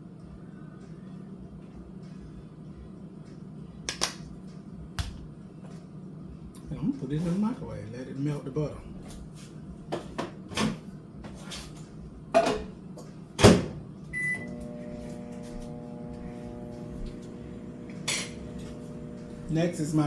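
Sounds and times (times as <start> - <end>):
microwave oven humming: 12.9 - 20.0
keypad beep: 14.2 - 14.5.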